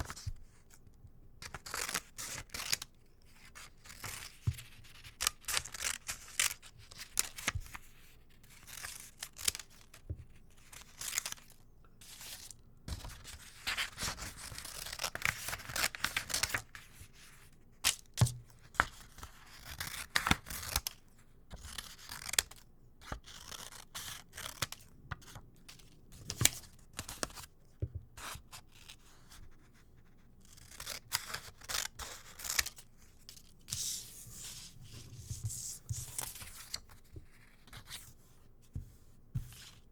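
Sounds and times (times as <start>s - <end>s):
scissors snipping paper: 30.5s - 33.4s.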